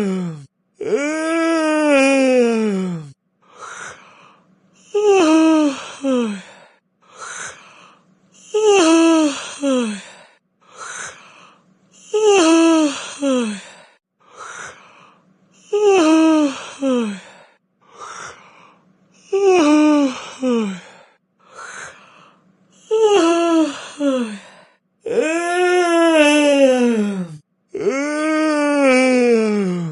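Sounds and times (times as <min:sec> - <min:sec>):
person yawning: 0:25.1 - 0:29.9.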